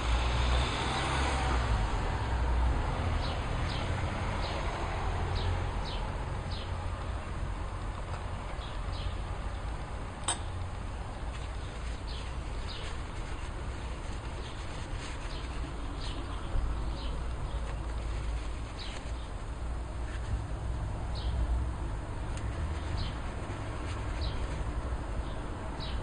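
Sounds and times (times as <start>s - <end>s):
small birds chirping: 5.4s - 19.4s, 21.1s - 21.4s, 22.3s - 24.6s, 25.2s - 26.0s.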